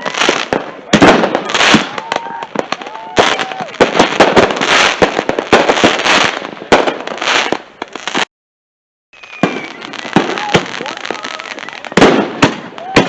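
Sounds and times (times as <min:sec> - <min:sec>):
firecrackers crackling: 0:00.0 - 0:08.3, 0:09.2 - 0:13.0
fireworks banging and popping: 0:00.0 - 0:08.3, 0:09.2 - 0:13.0
faint firework whistle: 0:09.1 - 0:12.0.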